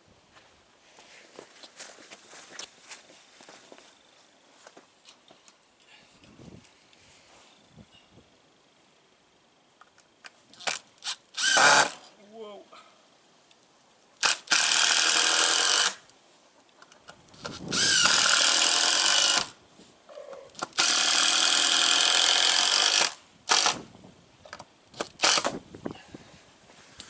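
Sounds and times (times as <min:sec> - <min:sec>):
power drill running: 0:11.4 - 0:12.0, 0:14.2 - 0:16.0, 0:17.8 - 0:19.5, 0:20.8 - 0:23.8.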